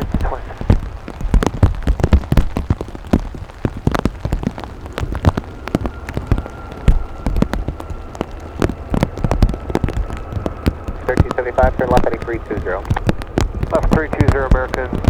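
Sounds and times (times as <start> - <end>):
big raindrops tapping: 0.0 - 15.0
faint steady tone: 4.0 - 15.0.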